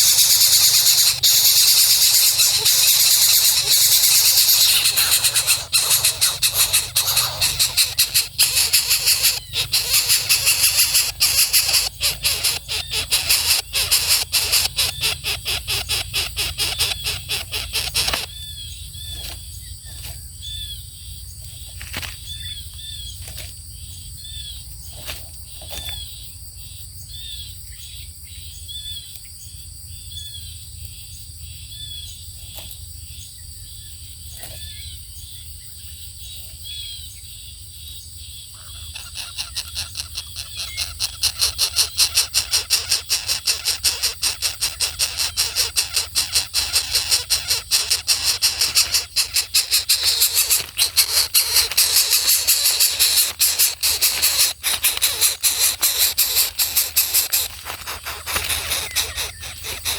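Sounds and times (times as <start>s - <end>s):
harsh high-pitched squealing: 0.0s - 18.3s, 41.2s - 59.9s.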